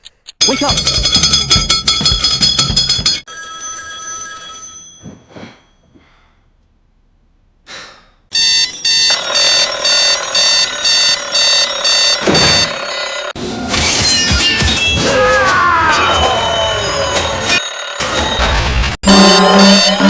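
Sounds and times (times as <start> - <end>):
alarm clock bells ringing: 0.4 - 5.1, 8.3 - 13.4, 15.9 - 20.0
pulsing bell alarm: 8.3 - 13.4, 15.8 - 20.0.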